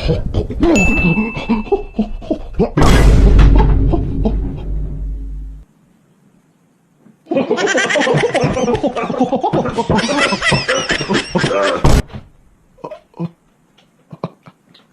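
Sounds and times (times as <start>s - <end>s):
goofy meme sound effects: 0.7s - 4.6s
loud deep boom: 2.8s - 5.6s.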